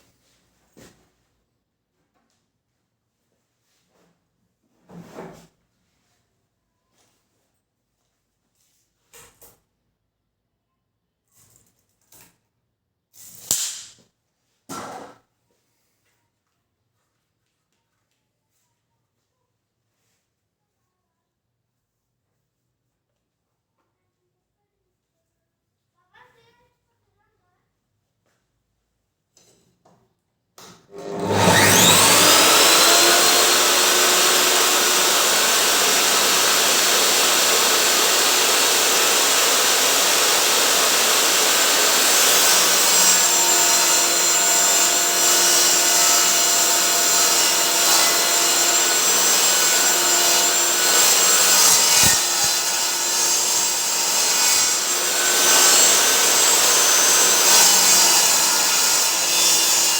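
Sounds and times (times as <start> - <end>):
table saw sawing wood: 30.9 - 59.9.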